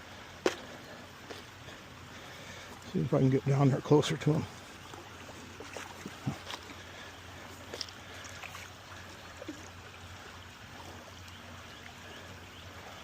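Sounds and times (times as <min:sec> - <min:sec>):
creek water running over rocks: 0:00.0 - 0:13.0.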